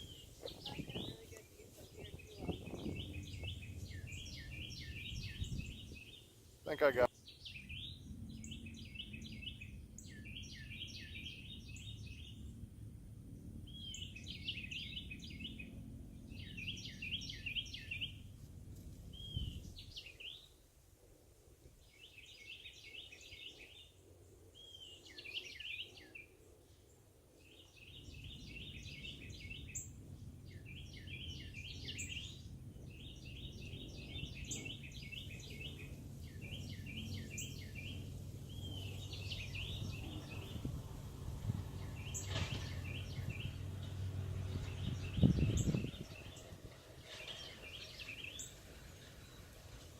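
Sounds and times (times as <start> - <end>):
low rumble: 0.0 - 6.0
songbird singing: 0.0 - 18.4, 19.1 - 20.7, 21.7 - 49.9.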